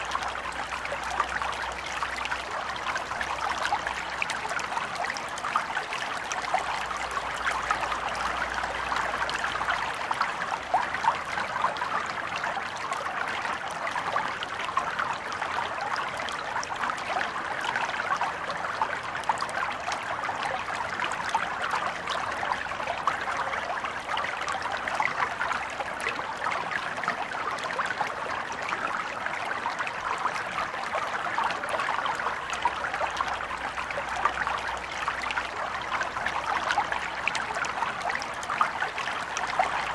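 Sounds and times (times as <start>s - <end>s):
stream trickling over stones: 0.0s - 39.9s.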